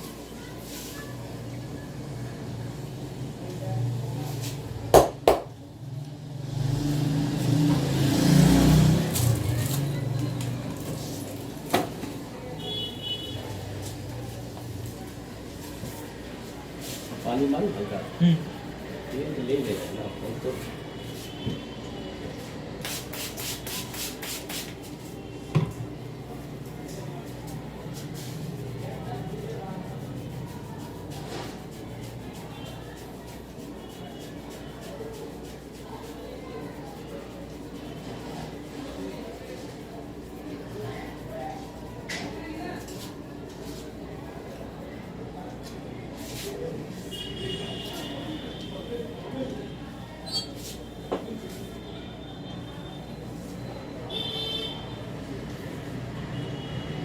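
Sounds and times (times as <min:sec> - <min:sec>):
road traffic rumble: 0:00.1 - 0:57.0
thump: 0:25.5 - 0:25.8.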